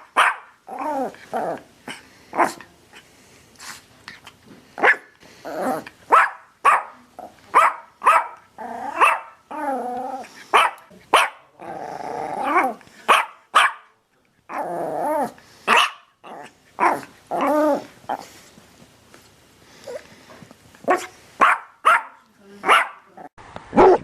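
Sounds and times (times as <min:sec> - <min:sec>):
dog barking: 0:00.0 - 0:00.6, 0:04.8 - 0:05.1, 0:06.1 - 0:08.4, 0:09.0 - 0:09.4, 0:10.6 - 0:11.5, 0:13.1 - 0:13.9, 0:15.7 - 0:16.1, 0:20.9 - 0:23.1, 0:23.7 - 0:24.0.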